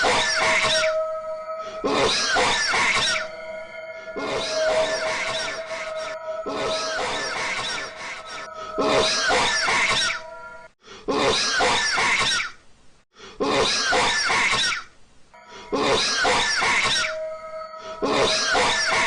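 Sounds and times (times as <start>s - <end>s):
background music tones: 0.0s - 10.8s, 15.4s - 19.0s.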